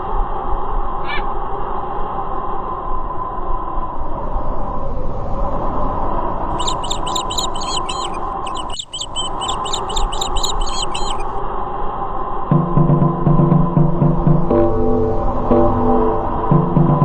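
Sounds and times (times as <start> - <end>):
quick high-pitched chirps: 6.5 - 11.3.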